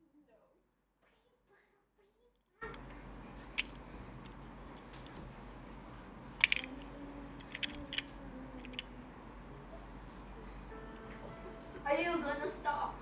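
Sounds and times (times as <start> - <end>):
steady low hum: 2.6 - 13.0
small objects clicking and tapping: 6.4 - 8.9.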